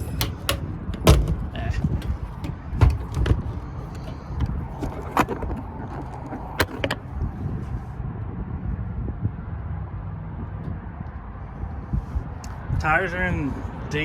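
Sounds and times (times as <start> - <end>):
sharp knocks and clicks: 0.0 - 7.0
steady low rumble: 0.0 - 13.8.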